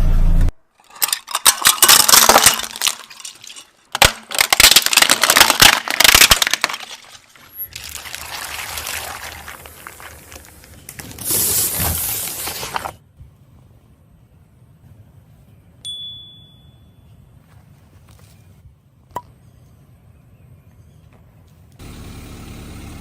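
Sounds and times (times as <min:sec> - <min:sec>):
objects crunching under tyre: 0:00.8 - 0:13.1.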